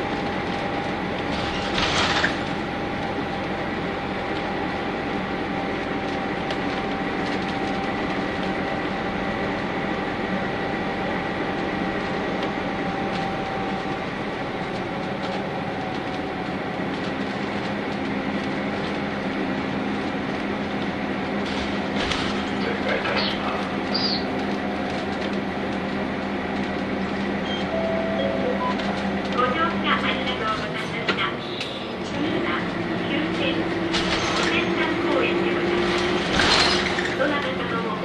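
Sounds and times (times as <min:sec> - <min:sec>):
bus interior engine drone: 0:00.0 - 0:38.0
low hum: 0:20.0 - 0:31.0.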